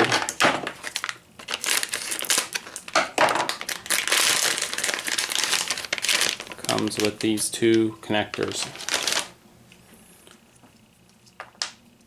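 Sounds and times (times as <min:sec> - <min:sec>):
plastic packaging crinkling: 0:00.0 - 0:09.4.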